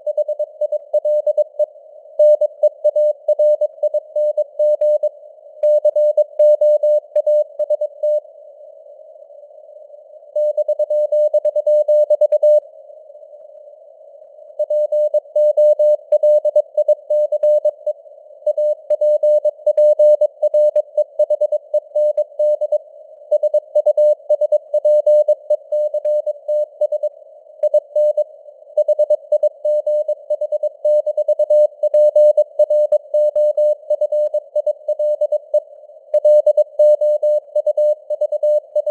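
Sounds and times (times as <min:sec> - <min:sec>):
morse code beeps: 0:36.2 - 0:38.9.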